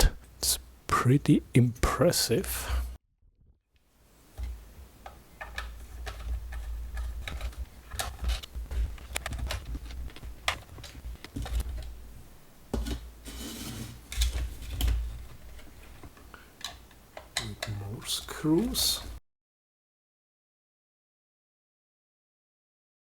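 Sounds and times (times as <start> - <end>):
plastic parts clicking and knocking: 4.3 - 11.9, 14.1 - 17.8.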